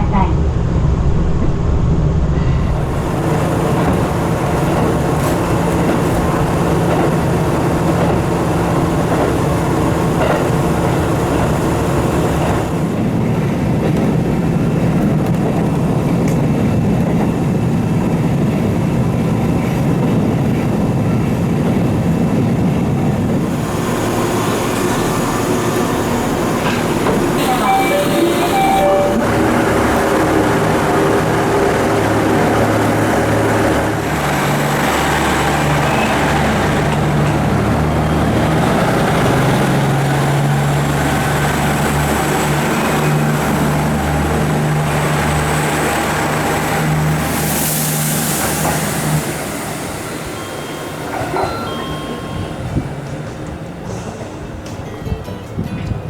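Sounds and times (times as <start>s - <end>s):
railcar engine drone: 0.0s - 56.0s
train rolling noise: 0.0s - 56.0s.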